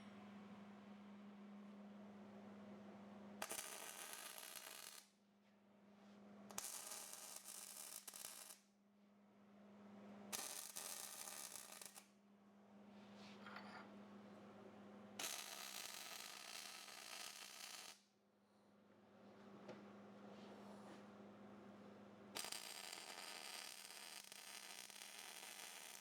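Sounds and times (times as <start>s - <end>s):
faint steady hum: 0.0s - 3.4s.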